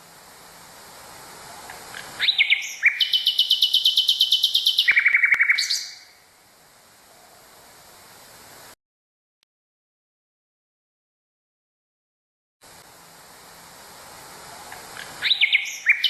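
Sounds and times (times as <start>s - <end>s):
recording hiss: 0.0s - 8.8s, 12.6s - 16.0s
nightingale singing: 1.4s - 6.2s, 14.4s - 16.0s.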